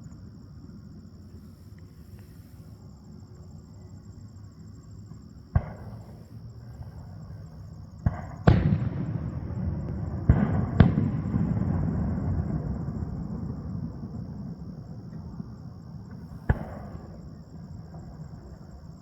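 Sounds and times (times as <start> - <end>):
rolling echo rumble: 5.4 - 19.0
firework shells booming: 5.5 - 15.4, 16.0 - 19.0.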